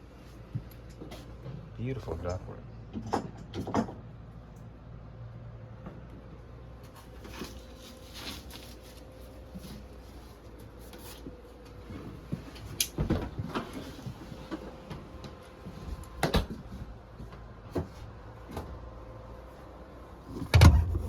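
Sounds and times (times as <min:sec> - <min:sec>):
tools knocking and clattering: 0:02.9 - 0:04.1.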